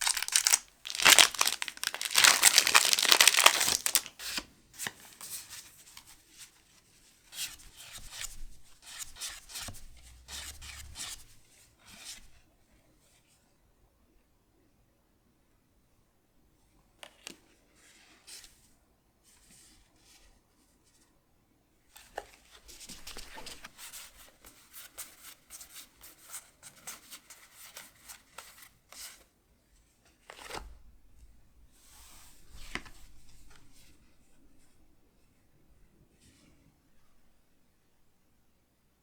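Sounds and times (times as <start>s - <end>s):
wrapper crinkling swish: 0.0s - 4.1s
cards flicking and rustling: 0.0s - 4.4s.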